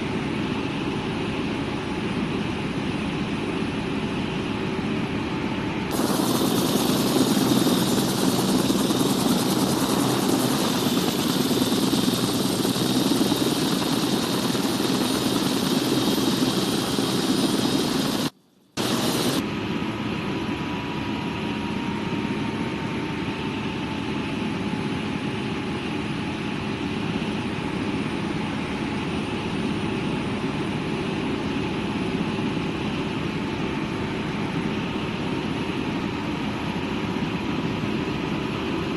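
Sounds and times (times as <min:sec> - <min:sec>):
faint steady whine: 0:00.0 - 0:31.1
helicopter turbine and rotor noise: 0:00.0 - 0:38.9.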